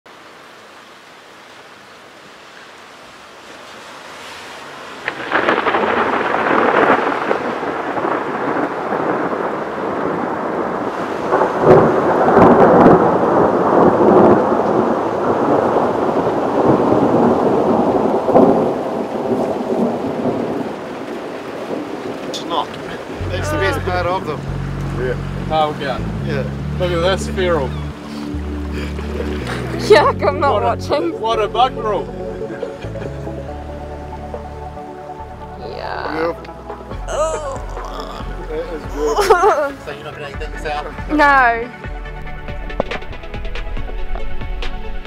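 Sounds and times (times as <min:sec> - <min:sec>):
rain: 0:00.1 - 0:45.0
thunder crackling and rumbling: 0:04.8 - 0:27.6.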